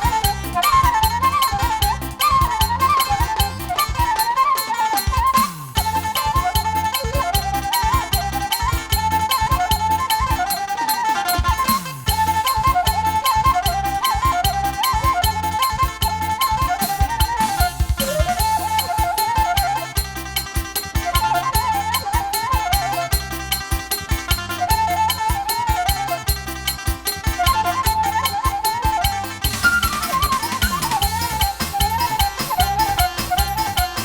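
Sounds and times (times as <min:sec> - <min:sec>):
fast drum beat: 0:00.0 - 0:34.0
high melody with trills: 0:00.0 - 0:34.0.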